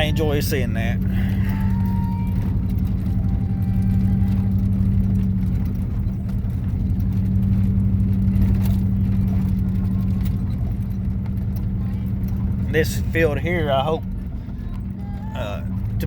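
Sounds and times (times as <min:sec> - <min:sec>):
vehicle engine humming: 0:00.0 - 0:16.0.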